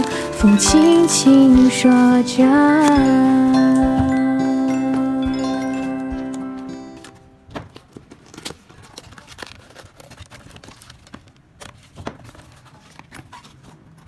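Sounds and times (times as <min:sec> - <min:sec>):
packaging clicks: 0:00.0 - 0:04.2, 0:05.6 - 0:14.0
packaging tearing: 0:07.0 - 0:14.0
plastic wrap crinkling: 0:07.0 - 0:14.0.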